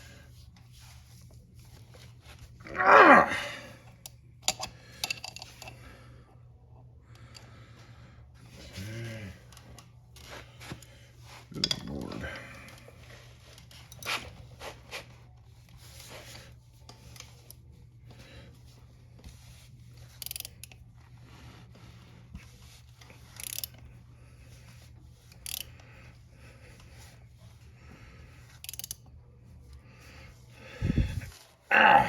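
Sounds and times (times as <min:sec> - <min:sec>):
steady low hum: 0:00.0 - 0:32.0
metal tools scraping and clicking: 0:04.4 - 0:05.8, 0:28.6 - 0:29.0.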